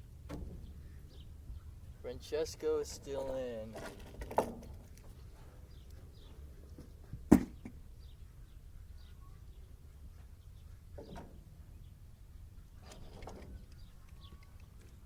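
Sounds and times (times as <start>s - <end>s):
low steady background noise: 0.0s - 15.0s
faint high bird chirps: 8.0s - 15.0s.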